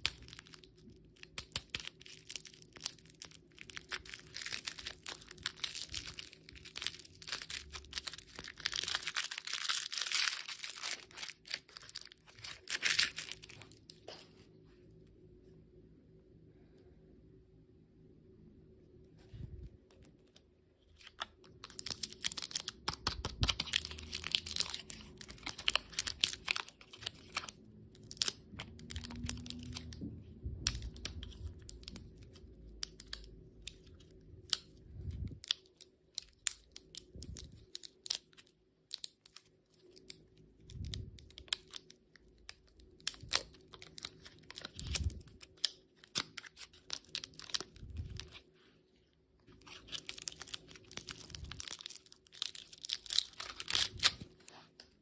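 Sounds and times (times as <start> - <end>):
candy wrapper crinkling: 0.0 - 14.3, 19.9 - 48.5, 49.4 - 55.0.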